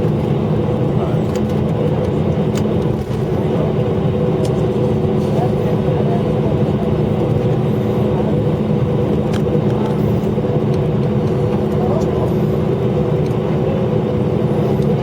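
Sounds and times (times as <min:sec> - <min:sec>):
airliner engine hum: 0:00.0 - 0:15.0.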